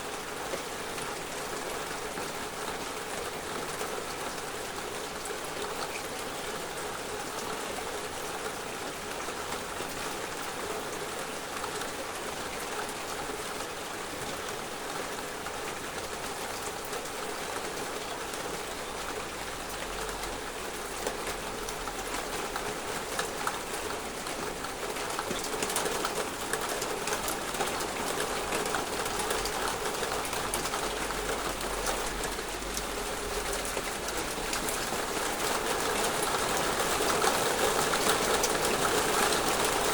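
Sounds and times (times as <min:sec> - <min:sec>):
heavy rain pouring: 0:14.7 - 0:39.9.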